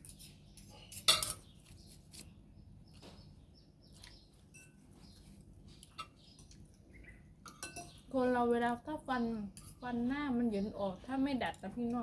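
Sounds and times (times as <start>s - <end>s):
cutlery clicking on dishes: 0.9s - 1.5s.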